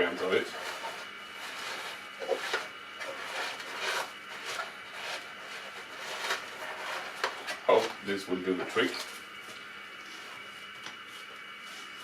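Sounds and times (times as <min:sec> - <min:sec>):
textile bag rubbing: 0:00.2 - 0:07.2.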